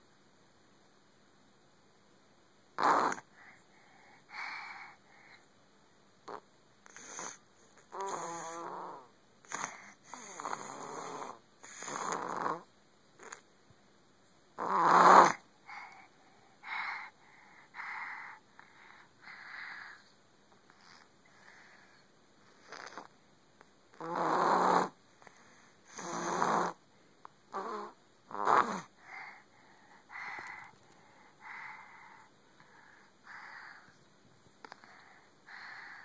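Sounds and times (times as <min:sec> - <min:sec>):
baby snoring: 0:02.8 - 0:05.0, 0:06.2 - 0:13.4, 0:14.6 - 0:20.0, 0:20.7 - 0:23.1, 0:23.9 - 0:26.8, 0:27.5 - 0:33.9.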